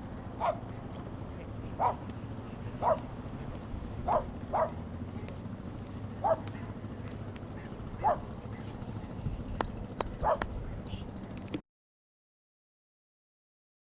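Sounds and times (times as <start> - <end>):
steady low hum: 0.0 - 11.6
dog barking: 0.4 - 0.7, 1.8 - 2.1, 2.7 - 3.1, 4.0 - 4.8, 6.2 - 6.8, 7.6 - 8.8, 10.2 - 10.6.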